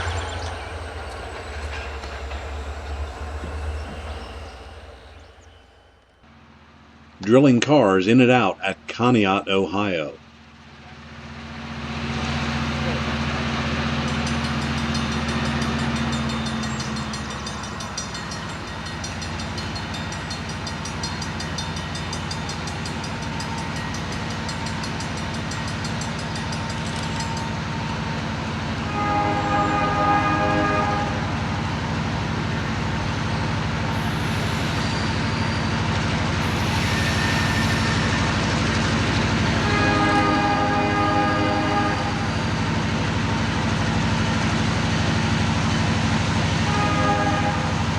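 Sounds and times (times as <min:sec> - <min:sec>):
diesel locomotive engine running: 0:00.0 - 0:47.9
locomotive air horn blasts: 0:28.8 - 0:31.6, 0:33.9 - 0:42.6, 0:46.5 - 0:47.9.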